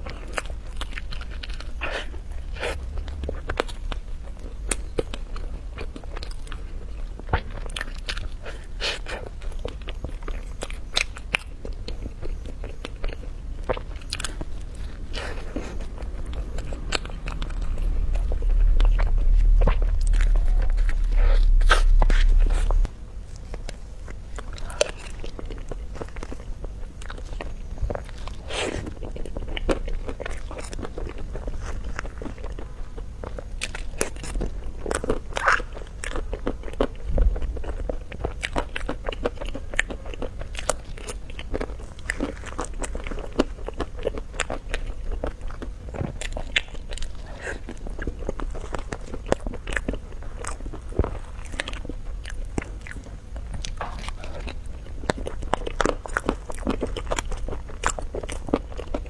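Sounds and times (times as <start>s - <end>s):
person chewing crunchy food: 0.0s - 22.9s, 38.4s - 59.0s.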